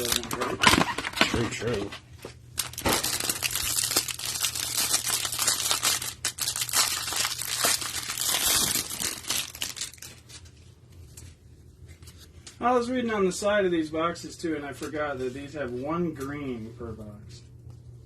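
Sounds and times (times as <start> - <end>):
plastic and cardboard tearing: 0.0 - 1.9, 2.6 - 10.4.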